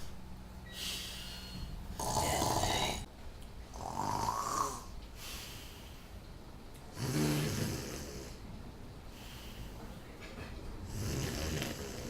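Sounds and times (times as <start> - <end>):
quiet breathing: 0.0 - 3.1, 3.7 - 6.4, 7.1 - 12.0
boy snoring: 2.0 - 3.1, 3.7 - 4.9, 6.9 - 8.4, 10.9 - 12.0.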